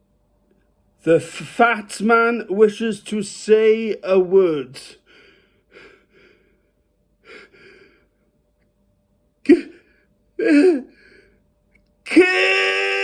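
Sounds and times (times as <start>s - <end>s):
man gasping and breathing hard: 5.0s - 8.1s
man's strained cry: 9.5s - 11.2s, 12.1s - 13.0s.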